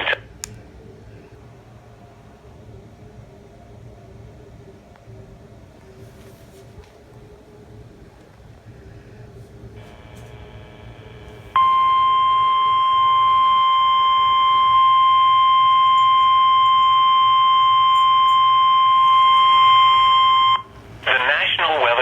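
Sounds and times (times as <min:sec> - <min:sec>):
faint radio hiss: 0:00.0 - 0:11.6, 0:20.7 - 0:22.0
high-pitched alarm tone: 0:11.6 - 0:20.7.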